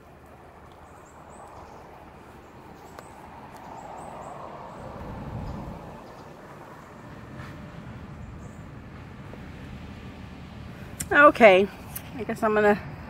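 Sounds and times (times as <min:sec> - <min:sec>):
birds chirping: 0:00.0 - 0:12.8
low rumble: 0:04.7 - 0:11.0.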